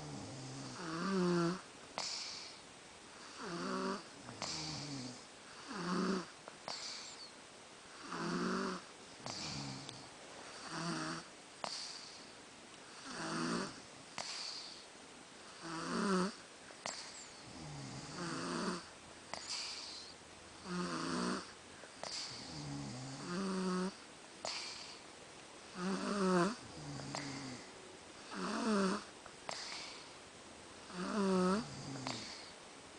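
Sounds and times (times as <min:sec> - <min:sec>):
person snoring: 0:00.0 - 0:02.6, 0:03.2 - 0:07.2, 0:08.0 - 0:12.2, 0:12.9 - 0:14.8, 0:15.5 - 0:25.0, 0:25.7 - 0:30.1, 0:30.9 - 0:32.5
faint breath: 0:02.0 - 0:02.7, 0:06.6 - 0:07.4, 0:11.6 - 0:12.4, 0:14.2 - 0:14.9, 0:19.3 - 0:20.2, 0:21.7 - 0:22.6, 0:24.4 - 0:25.1, 0:29.4 - 0:30.2.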